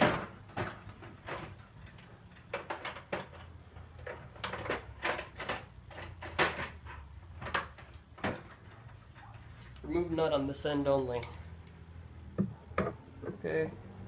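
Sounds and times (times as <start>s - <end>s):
clicks and knocks of metal box: 0.0s - 8.8s.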